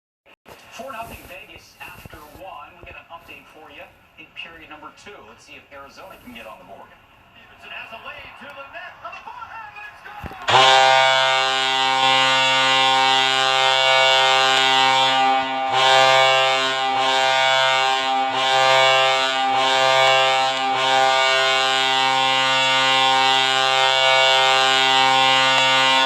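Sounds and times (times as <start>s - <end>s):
hockey goal horn: 10.5s - 26.0s.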